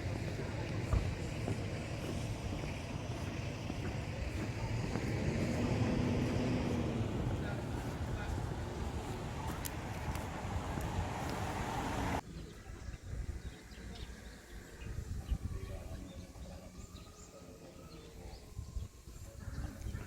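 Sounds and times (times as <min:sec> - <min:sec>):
loud steady rush of noise: 0:00.0 - 0:12.2
low rumble: 0:00.0 - 0:12.2.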